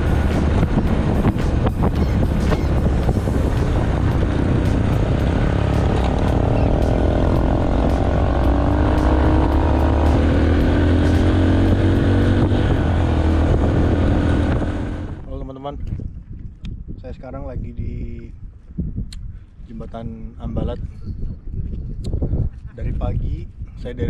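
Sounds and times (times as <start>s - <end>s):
motor engine running: 0.0s - 15.2s.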